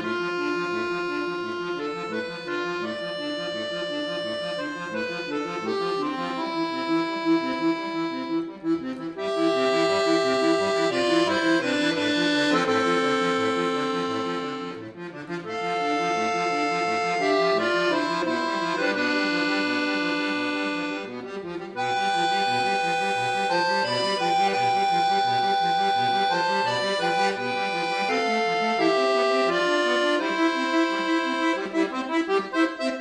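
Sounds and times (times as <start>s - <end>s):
accordion playing chords: 0.0s - 33.0s.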